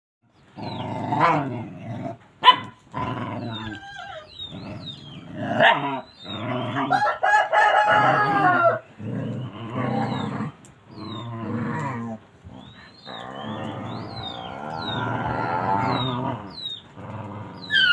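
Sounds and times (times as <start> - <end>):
dog howling and whining: 3.4 - 5.0, 6.7 - 10.2, 17.3 - 17.9.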